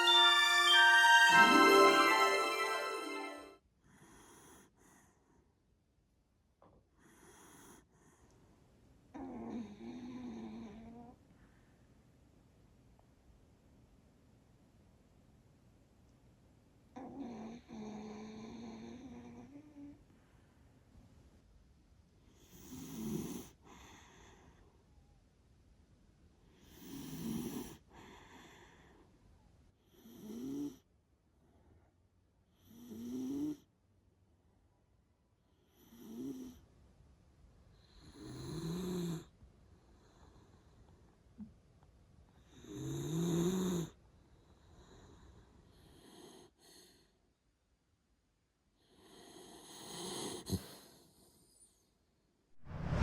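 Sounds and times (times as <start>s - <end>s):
dog snoring: 22.4s - 23.5s, 26.7s - 27.8s, 48.8s - 51.4s.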